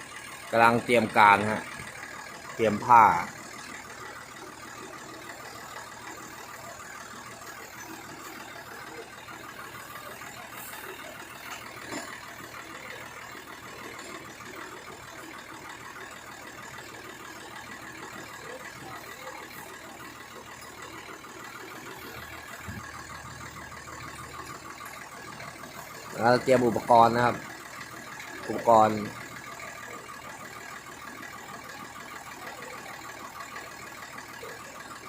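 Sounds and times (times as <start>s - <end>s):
truck engine idling: 0.0s - 35.0s.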